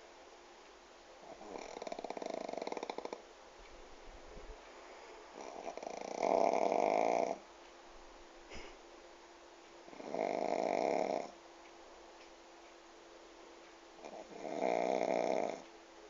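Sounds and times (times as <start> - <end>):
dog snoring: 1.2 - 3.2, 5.4 - 7.4, 9.9 - 11.4, 14.0 - 15.6.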